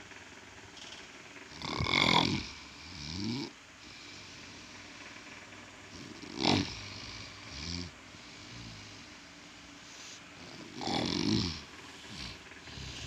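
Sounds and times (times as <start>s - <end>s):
man snoring loudly: 1.5s - 4.9s, 5.9s - 9.2s, 10.4s - 13.0s.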